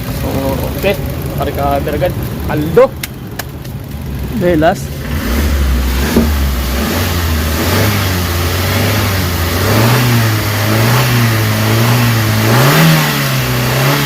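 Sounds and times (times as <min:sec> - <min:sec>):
car engine revving: 0:03.8 - 0:14.0.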